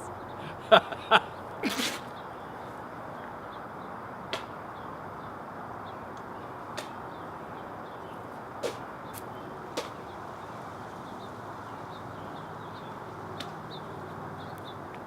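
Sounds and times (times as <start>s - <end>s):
man laughing: 0.4s - 2.0s.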